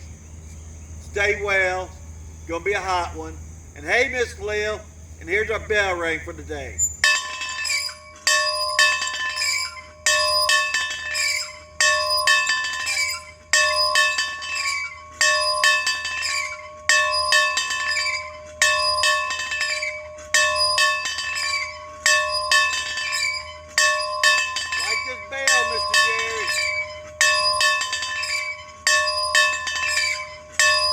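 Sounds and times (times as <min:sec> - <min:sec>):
bell ringing in steady rhythm: 0:07.0 - 0:30.9.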